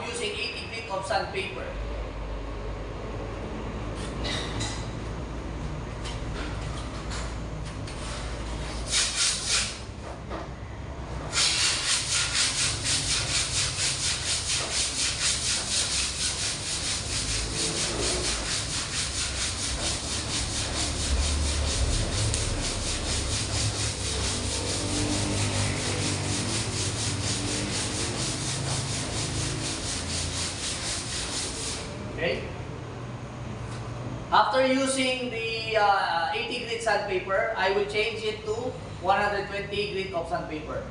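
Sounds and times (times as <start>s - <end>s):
sandpaper rubbing body filler: 8.6s - 9.9s, 11.3s - 32.0s.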